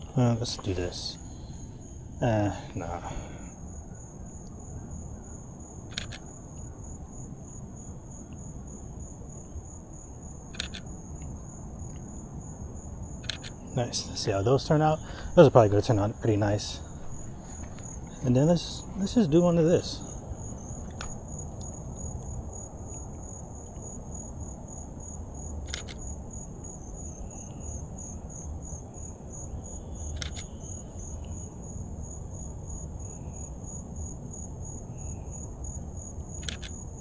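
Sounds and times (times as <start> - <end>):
insects chirping: 0.0 - 37.0
camera shutter clicking: 5.9 - 6.2, 10.5 - 10.8, 25.6 - 26.0, 30.1 - 30.5, 36.4 - 36.8.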